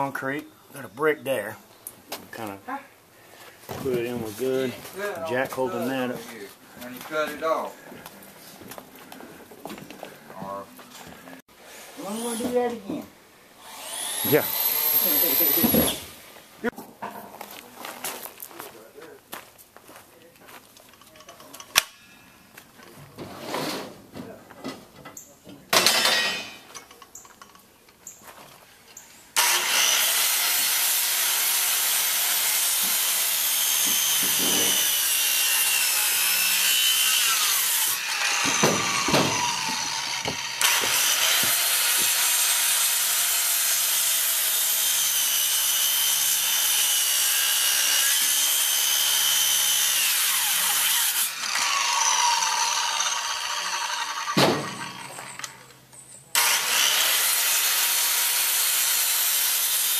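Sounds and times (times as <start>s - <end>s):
power saw cutting wood: 11.9s - 13.0s, 13.6s - 16.2s, 29.4s - 55.7s, 56.3s - 59.9s.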